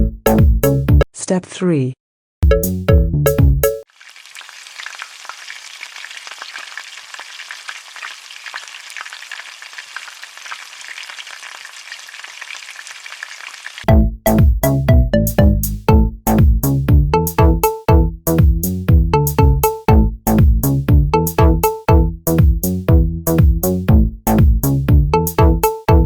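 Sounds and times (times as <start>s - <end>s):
music jingle: 0.0s - 1.0s, 2.4s - 3.8s, 13.9s - 23.6s, 24.9s - 26.0s
deep-frying sizzle in oil: 3.9s - 13.9s.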